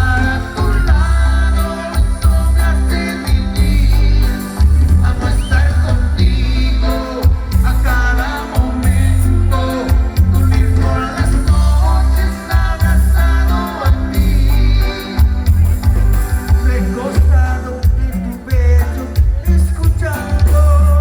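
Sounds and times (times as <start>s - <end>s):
song with sung vocal: 0.0s - 15.6s, 16.4s - 21.0s.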